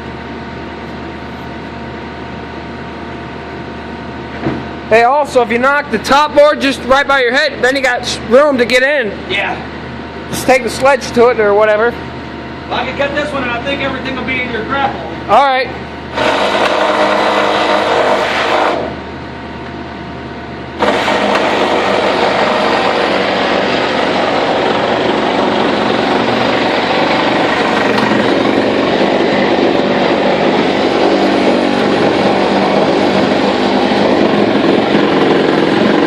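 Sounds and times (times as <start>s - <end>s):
diesel engine humming: 0.0s - 36.0s
reciprocating saw cutting board: 16.1s - 19.0s, 20.8s - 29.4s.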